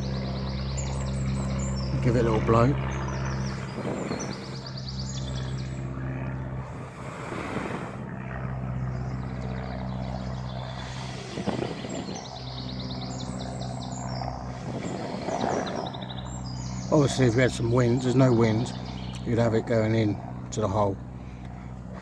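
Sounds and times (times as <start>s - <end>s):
birds trilling: 0.0s - 22.0s
steady low hum: 0.0s - 22.0s
person blowing into fire base: 6.7s - 8.1s.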